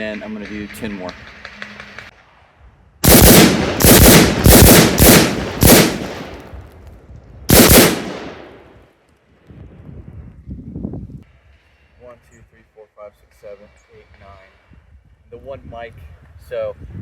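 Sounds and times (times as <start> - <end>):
rifle shots echoing: 3.0 - 6.6, 7.5 - 8.8.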